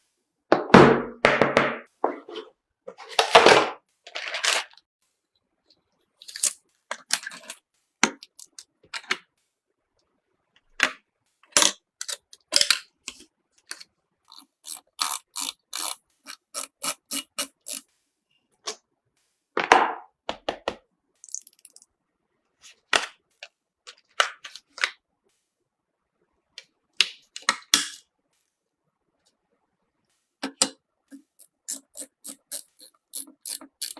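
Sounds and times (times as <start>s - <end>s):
computer parts clicking and scraping: 6.2s - 7.6s, 11.5s - 17.9s, 30.4s - 33.9s.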